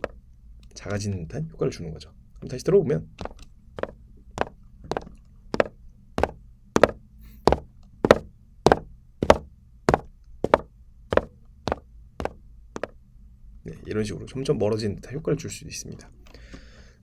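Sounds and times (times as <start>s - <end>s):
footsteps walking: 3.2s - 12.9s.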